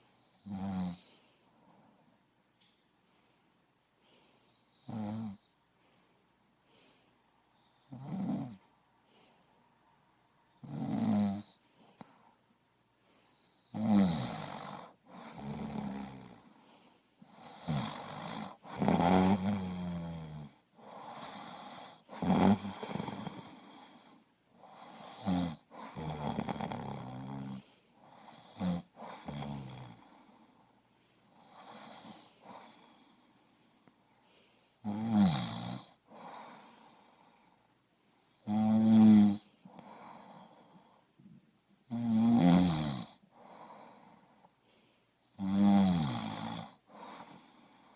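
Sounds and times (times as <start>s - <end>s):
soft breathing: 0.0s - 8.0s, 8.6s - 10.6s, 11.4s - 13.7s, 14.4s - 19.8s, 20.5s - 26.0s, 27.2s - 34.8s, 35.9s - 38.4s, 39.4s - 41.5s, 43.2s - 45.4s, 46.7s - 47.9s
snore-like breaths and gasps: 13.7s - 30.7s, 34.2s - 37.6s, 42.3s - 47.9s.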